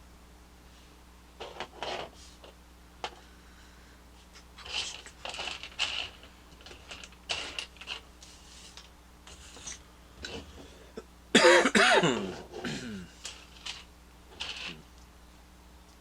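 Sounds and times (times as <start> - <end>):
plastic parts rattling and clicking: 1.4 - 3.2, 4.6 - 8.1, 8.7 - 10.5, 13.2 - 14.9
person clearing throat: 11.0 - 13.2.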